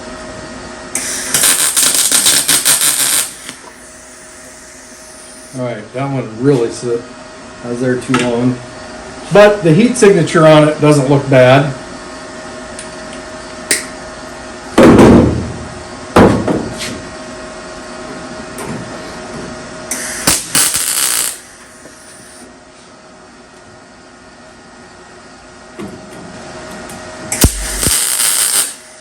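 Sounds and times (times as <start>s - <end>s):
welder harsh bursts: 1.0s - 5.6s, 19.9s - 22.4s, 27.4s - 29.0s.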